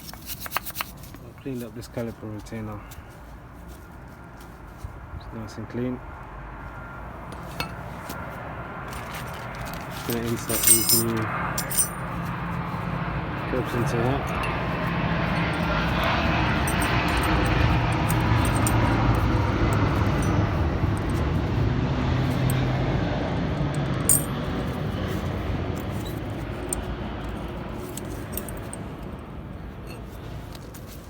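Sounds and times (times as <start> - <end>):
engine-like rumble: 6.2 - 31.0.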